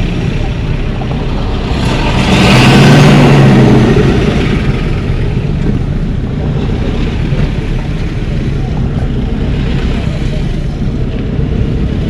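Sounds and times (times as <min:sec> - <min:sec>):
road traffic: 0:00.0 - 0:12.0
vehicle engine running: 0:00.0 - 0:12.0.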